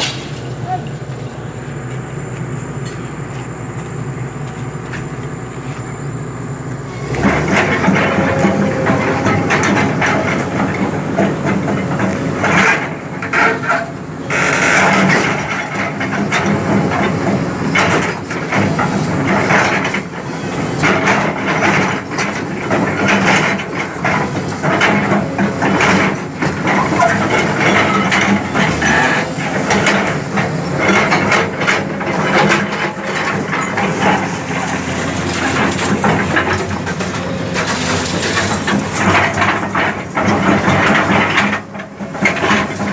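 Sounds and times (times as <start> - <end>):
clanking steel tracks and blade: 0.0 - 1.3, 6.8 - 42.9
bulldozer diesel engine running: 0.0 - 42.9.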